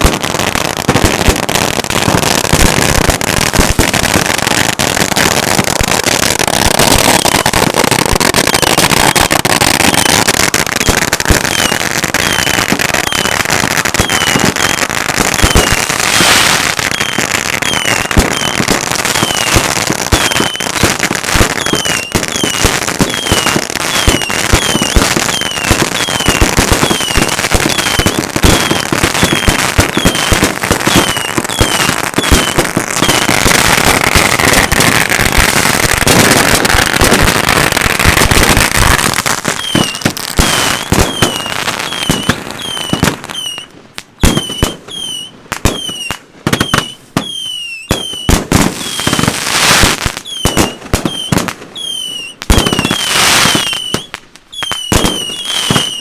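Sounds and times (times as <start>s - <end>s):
fireworks crackling and banging: 0.0s - 56.0s
short falling whistles: 40.7s - 49.1s, 50.2s - 53.0s, 53.6s - 56.0s.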